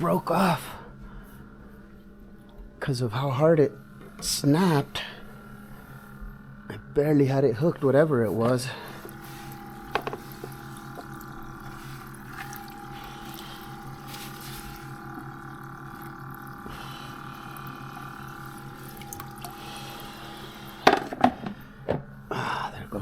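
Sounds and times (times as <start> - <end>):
steady mechanical hum: 0.0 - 23.0
water-like noise: 8.2 - 21.8.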